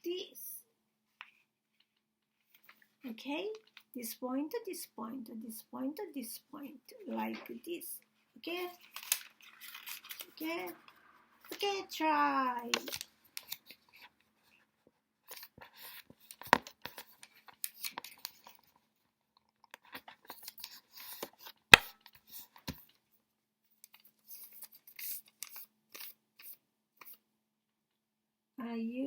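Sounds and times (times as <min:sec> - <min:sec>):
paper rustling and creasing: 0:08.6 - 0:11.7.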